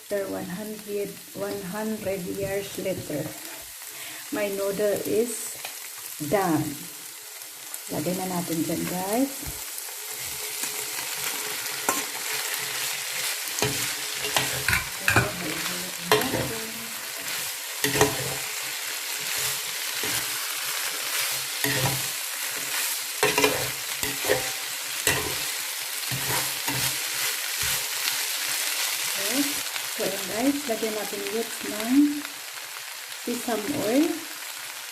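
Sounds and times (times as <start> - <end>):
noodles sizzling in a pan: 0.0 - 34.9
utensil scraping and knocking pan: 10.3 - 16.6, 17.2 - 18.5, 21.2 - 25.5, 26.1 - 27.0.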